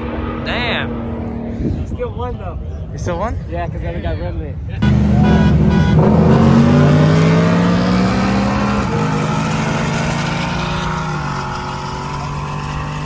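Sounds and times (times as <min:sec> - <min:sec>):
vehicle engine accelerating: 0:04.8 - 0:13.0.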